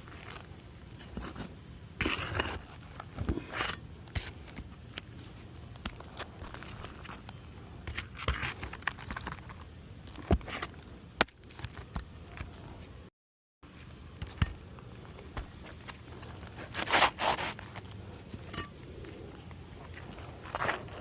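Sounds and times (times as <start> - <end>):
roof shingles scraping and crackling: 15.0 - 18.2.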